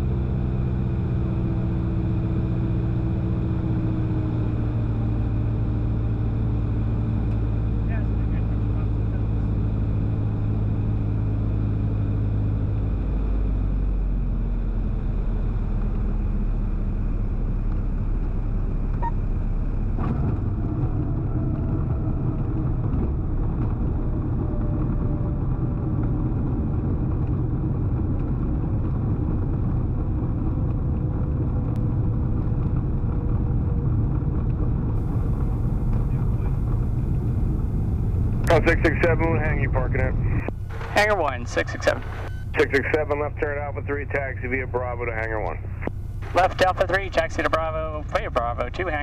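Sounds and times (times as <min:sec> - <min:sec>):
light aircraft engine and propeller: 0:00.0 - 0:49.0
faint falling whine: 0:35.0 - 0:48.8.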